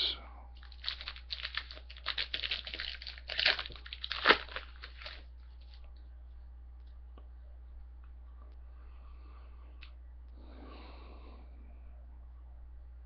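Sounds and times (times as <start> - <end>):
low steady hum: 0.0 - 13.0
foil wrapper crinkling and tearing: 0.6 - 5.9.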